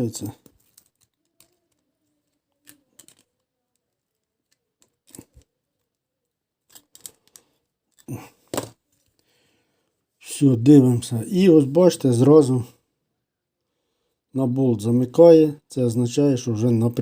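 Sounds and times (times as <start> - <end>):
plastic parts clicking: 0.4 - 6.0, 6.6 - 9.2.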